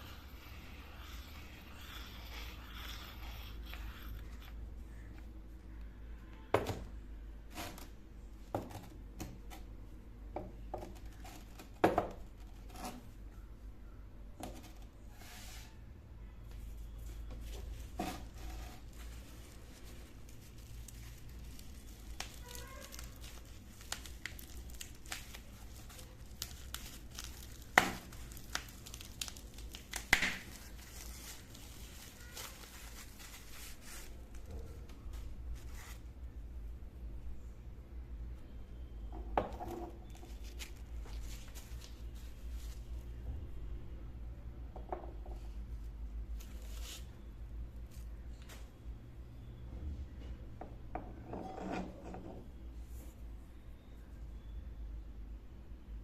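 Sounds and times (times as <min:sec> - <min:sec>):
packaging crinkling: 0:17.4 - 0:34.5.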